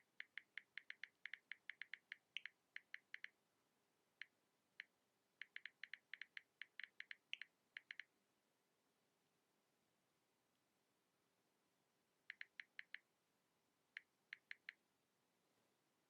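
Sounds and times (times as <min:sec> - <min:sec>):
phone keyboard clicks: 0:00.2 - 0:03.3, 0:05.4 - 0:08.1, 0:12.3 - 0:13.0.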